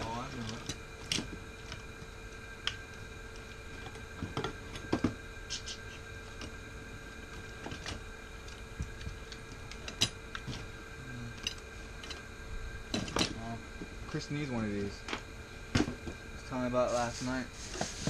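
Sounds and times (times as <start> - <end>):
electrical hum: 0.0 - 18.0.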